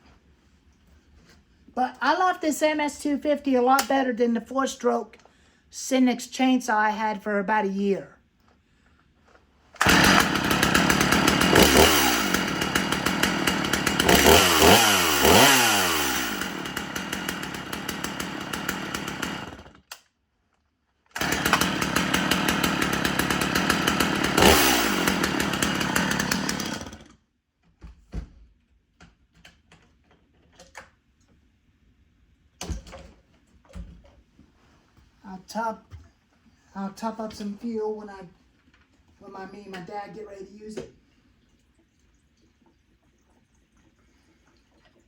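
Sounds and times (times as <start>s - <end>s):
chainsaw revving: 9.8s - 19.8s, 21.2s - 27.1s.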